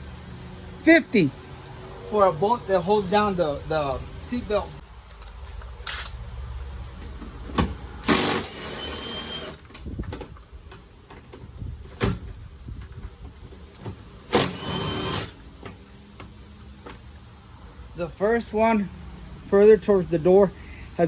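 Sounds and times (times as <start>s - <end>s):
power driver motor whine: 7.9s - 9.7s, 14.3s - 15.4s.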